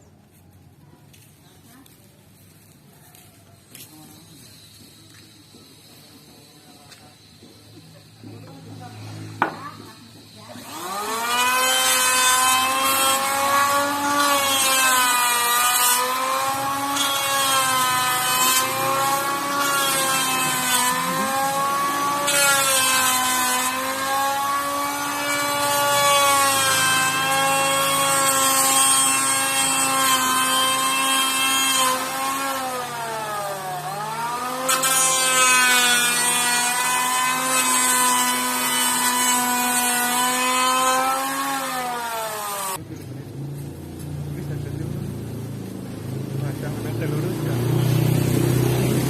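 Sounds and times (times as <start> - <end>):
electric hand planer running: 6.9 - 42.8.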